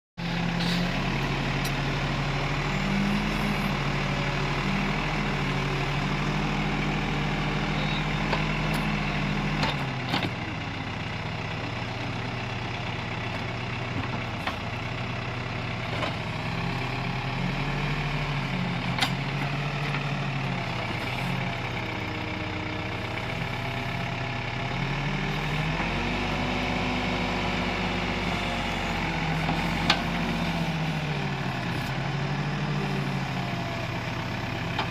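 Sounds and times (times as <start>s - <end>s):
diesel engine running: 0.2s - 34.9s.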